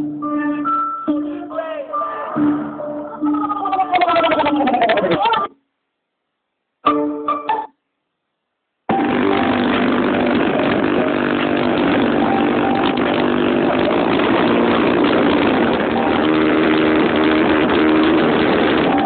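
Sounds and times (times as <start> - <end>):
loud distorted music from car speakers: 8.9 - 19.0.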